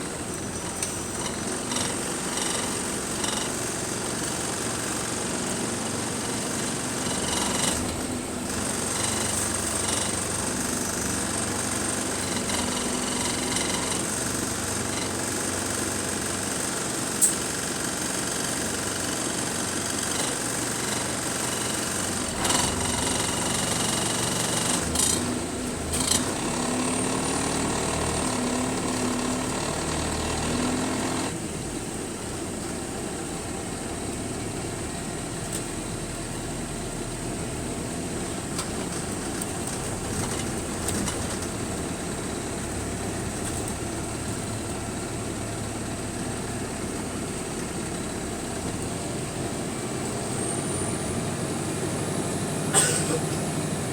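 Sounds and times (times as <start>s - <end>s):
bus engine running: 0.0s - 53.9s.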